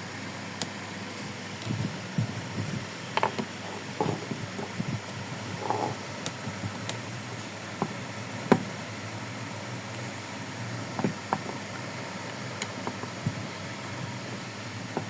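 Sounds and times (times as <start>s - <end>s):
steady low hum and hiss: 0.0s - 15.0s.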